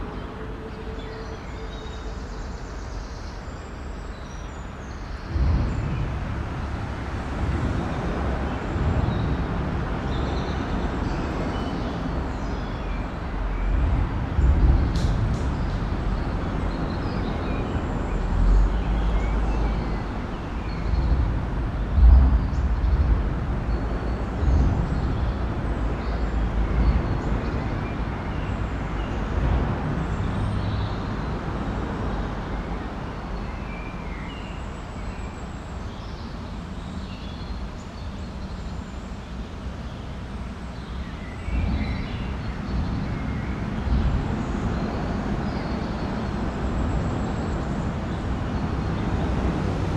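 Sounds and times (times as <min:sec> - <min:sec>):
traffic rumble: 0:00.0 - 0:49.9
deep thumps: 0:05.2 - 0:09.4, 0:20.8 - 0:27.2.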